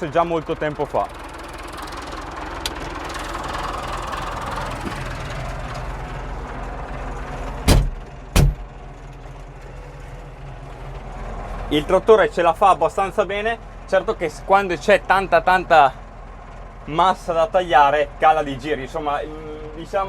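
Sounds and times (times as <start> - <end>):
tractor diesel engine running: 0.0 - 20.0
loud knocks: 7.7 - 8.7.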